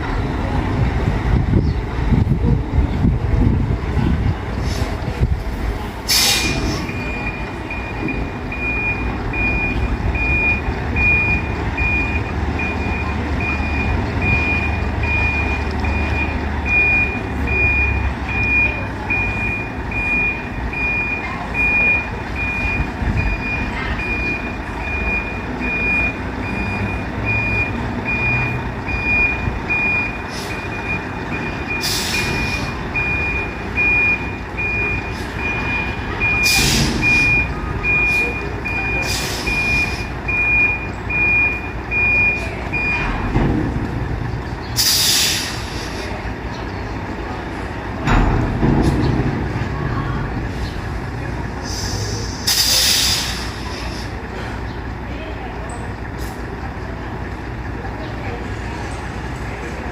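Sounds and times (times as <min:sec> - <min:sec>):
truck engine running: 0:00.0 - 0:59.9
truck reversing alarm beeping: 0:06.1 - 0:59.9
short air hiss: 0:51.6 - 0:54.0.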